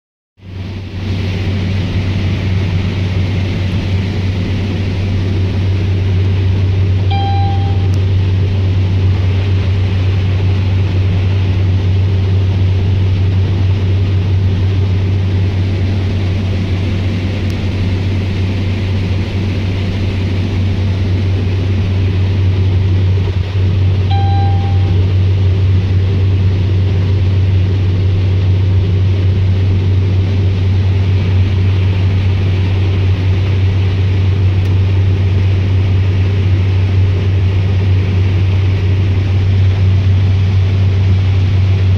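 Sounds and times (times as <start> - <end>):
diesel engine droning under load: 0.4 - 41.9
short electronic beeps: 7.1 - 8.0, 24.1 - 25.1.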